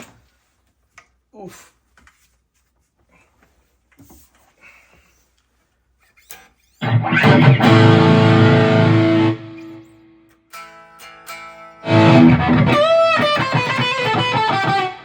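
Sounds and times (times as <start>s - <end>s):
distorted electric guitar: 6.8s - 15.0s.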